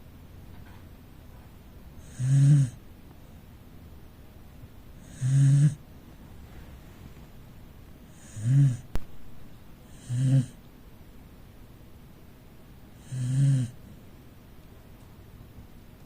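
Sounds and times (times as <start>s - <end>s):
dog snoring: 2.0s - 2.8s, 5.0s - 5.8s, 8.0s - 8.9s, 9.8s - 10.6s, 13.0s - 13.8s.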